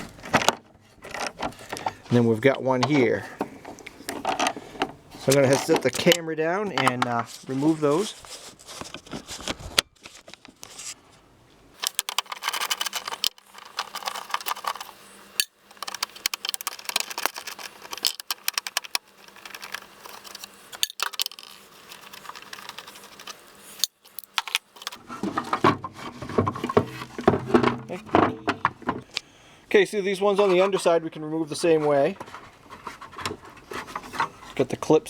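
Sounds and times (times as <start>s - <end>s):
knocking and scraping: 2.7s - 11.0s, 11.7s - 29.1s, 30.3s - 34.8s
metal tools rattling: 11.8s - 25.0s.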